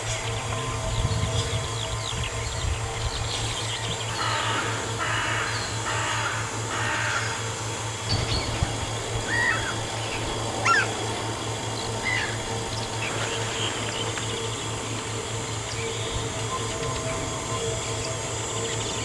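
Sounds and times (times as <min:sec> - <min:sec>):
harsh rasping bird calls: 0:00.0 - 0:19.0
low pulsing hum: 0:00.0 - 0:19.0
whistled bird chirps: 0:08.1 - 0:19.0.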